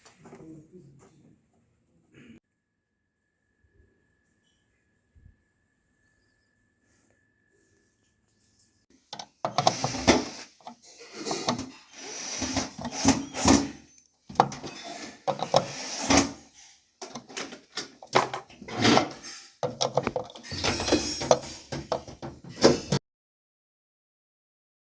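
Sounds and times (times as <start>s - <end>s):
hard objects knocking and rattling: 9.1s - 16.4s, 17.0s - 23.0s.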